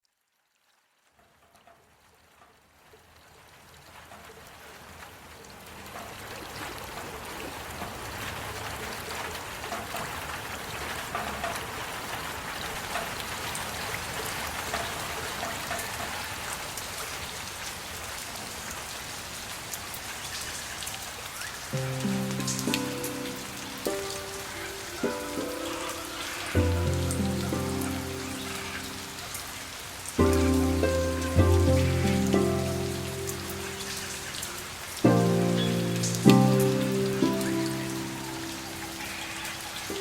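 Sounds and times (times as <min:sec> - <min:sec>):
water hiss with droplet clicks: 0:21.7 - 0:29.6
music with steady pitched tones: 0:21.8 - 0:28.8, 0:30.2 - 0:34.2, 0:35.0 - 0:38.8.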